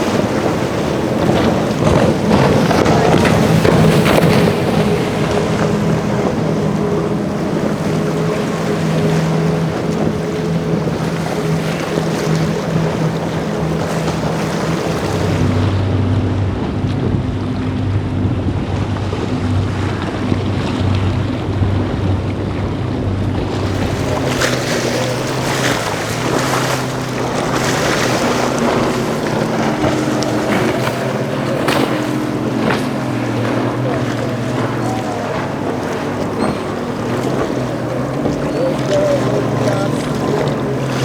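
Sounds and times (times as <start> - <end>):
motorboat engines running: 0.0 - 41.0
waves and spray splashing: 0.0 - 41.0
wind buffeting microphone: 0.0 - 41.0.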